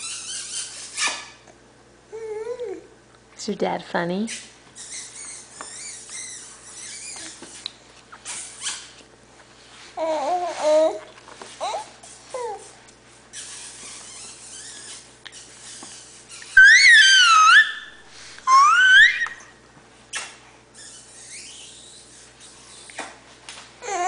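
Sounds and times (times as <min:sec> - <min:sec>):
baby squealing: 0:13.4 - 0:19.5.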